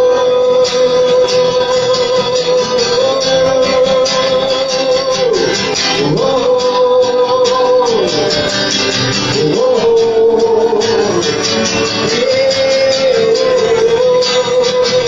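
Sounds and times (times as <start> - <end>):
slow worship music with guitar: 0.0 - 15.0.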